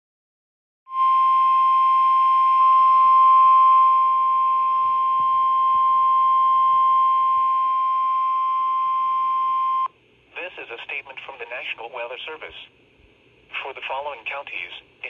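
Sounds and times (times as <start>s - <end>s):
radio alarm tone: 0.9s - 9.9s
faint static hiss: 8.9s - 15.0s.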